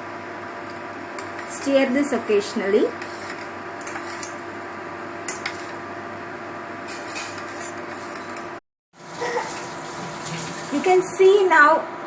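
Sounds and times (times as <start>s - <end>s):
spoon stirring in a saucepan: 0.6s - 4.4s, 6.9s - 8.5s
boiling liquid hiss: 9.0s - 11.5s.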